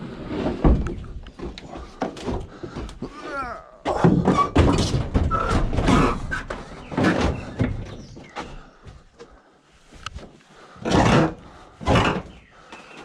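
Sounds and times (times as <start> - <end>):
metal panels banging and scraping: 4.0 - 8.1.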